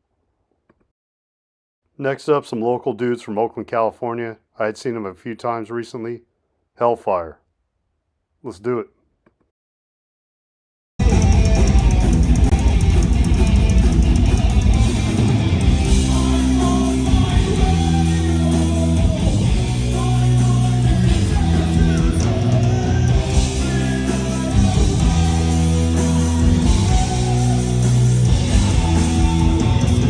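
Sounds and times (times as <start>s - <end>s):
heavy metal band playing: 11.0s - 30.0s.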